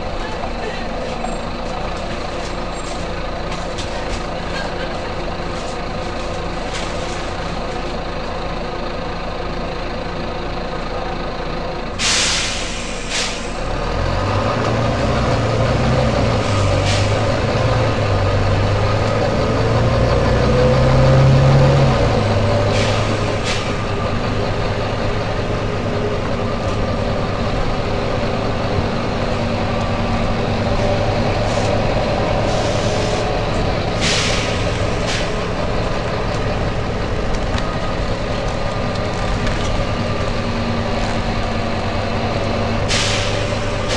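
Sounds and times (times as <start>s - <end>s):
bus diesel engine running: 0.0s - 43.9s
air brake hisses: 12.0s - 13.7s, 16.7s - 17.2s, 22.6s - 23.8s, 32.4s - 33.4s, 34.0s - 35.5s, 42.9s - 43.9s.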